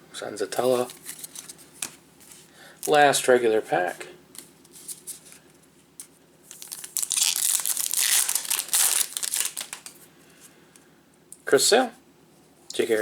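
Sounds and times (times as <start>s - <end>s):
wrapper tearing and crinkling: 6.5s - 10.0s.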